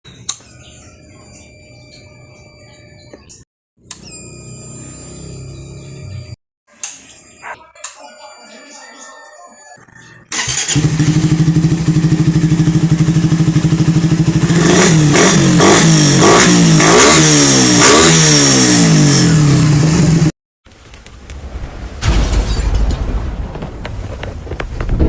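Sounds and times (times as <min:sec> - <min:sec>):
motorcycle engine idling and revving: 0:04.4 - 0:06.4, 0:10.3 - 0:20.3.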